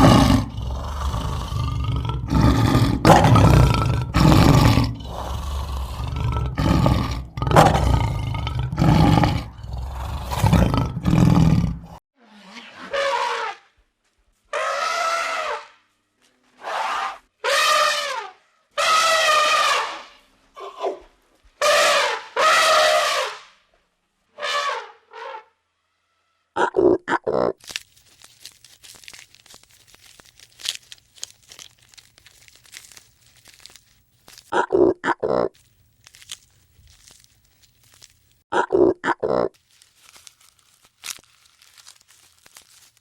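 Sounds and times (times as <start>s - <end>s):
crackling and tearing: 0.0s - 11.8s, 27.6s - 34.6s, 35.5s - 38.4s, 39.6s - 43.0s
elephant trumpeting: 0.0s - 13.7s, 14.5s - 15.8s, 16.6s - 21.0s, 21.6s - 23.5s, 24.4s - 25.6s
animal call: 14.5s - 15.8s, 16.6s - 23.5s.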